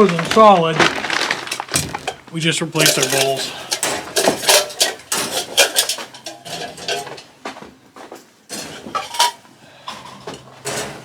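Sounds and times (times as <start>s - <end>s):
water bowls clinking and clattering: 0.0s - 7.4s, 8.1s - 11.0s.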